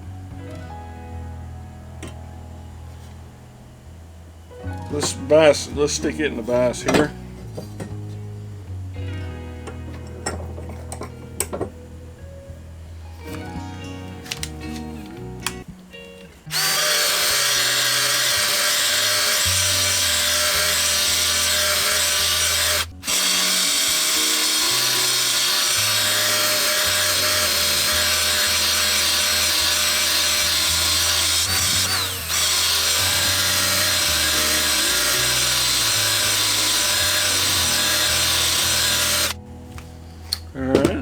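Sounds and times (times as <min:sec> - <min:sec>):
drill grinding metal blade: 0:16.5 - 0:39.4.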